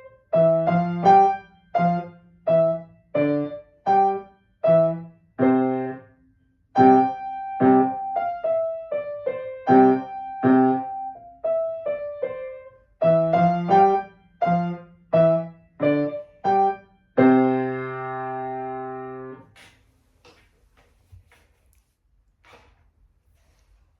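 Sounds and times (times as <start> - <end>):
piano piece: 0.0 - 6.0, 6.8 - 19.4.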